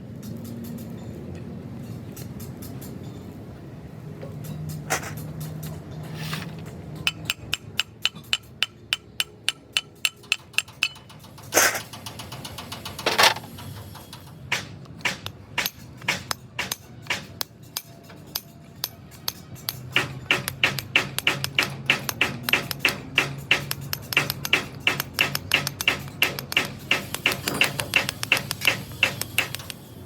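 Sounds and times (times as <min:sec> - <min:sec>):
scraping bursts: 0:04.7 - 0:06.7
hammer tapping on metal: 0:06.9 - 0:29.8.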